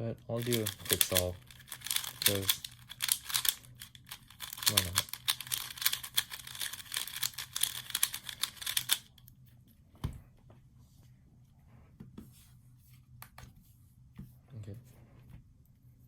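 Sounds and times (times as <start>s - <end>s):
puzzle cube clicking: 0.4s - 9.1s.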